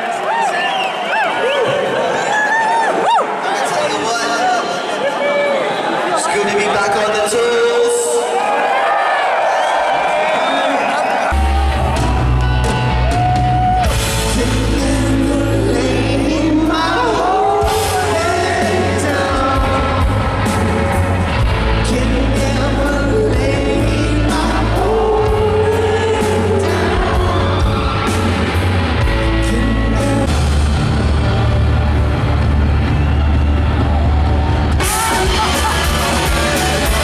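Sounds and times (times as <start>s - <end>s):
live rock band: 11.3s - 37.0s
person singing: 11.4s - 31.5s, 34.8s - 37.0s.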